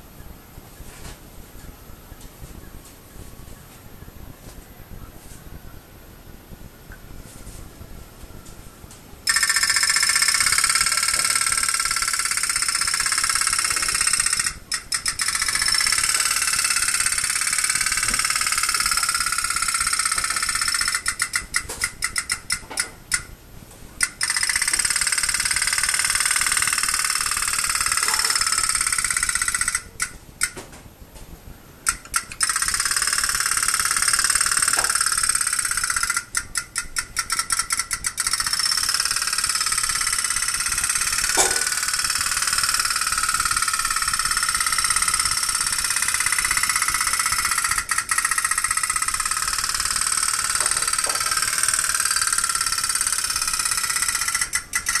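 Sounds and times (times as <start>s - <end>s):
toy steam engine puttering: 9.3s - 23.3s, 24.0s - 30.6s, 31.9s - 55.0s.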